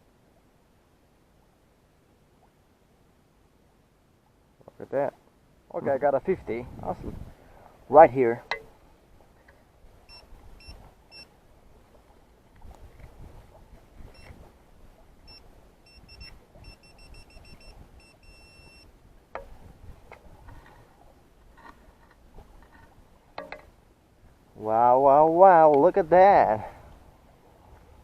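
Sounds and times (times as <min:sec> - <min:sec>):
pinpointer short high beeps: 0:10.1 - 0:11.3, 0:15.3 - 0:18.9.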